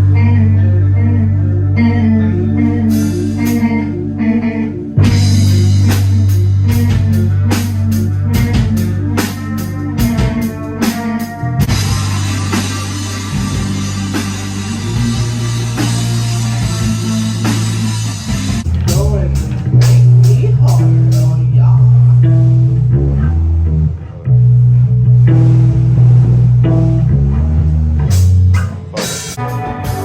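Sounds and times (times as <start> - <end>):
bass guitar: 0.0 - 30.0
electric guitar: 0.0 - 30.0
drum kit: 2.8 - 3.9, 5.0 - 22.9, 25.1 - 30.0.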